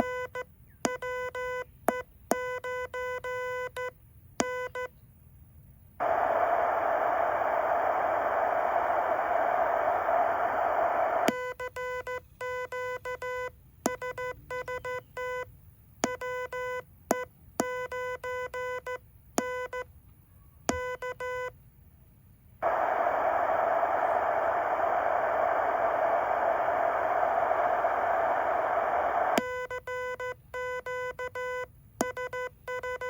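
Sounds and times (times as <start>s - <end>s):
receiver hiss: 6.0s - 11.4s, 22.6s - 29.5s.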